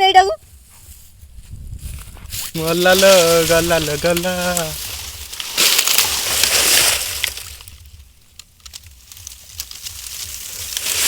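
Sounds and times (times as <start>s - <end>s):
splashing in shallow muddy water: 2.6s - 8.0s
sharp clicks: 3.0s - 11.0s.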